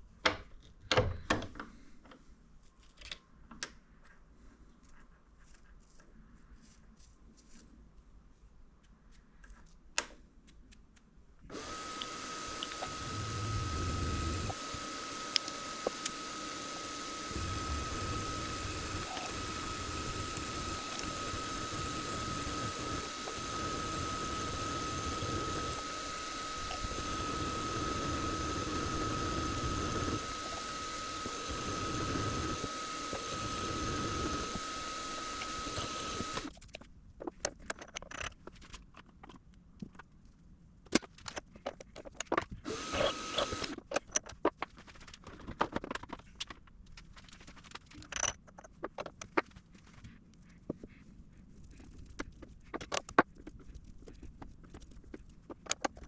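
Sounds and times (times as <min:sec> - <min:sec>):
benchtop machine tool whining: 0:11.5 - 0:36.5, 0:42.6 - 0:43.8.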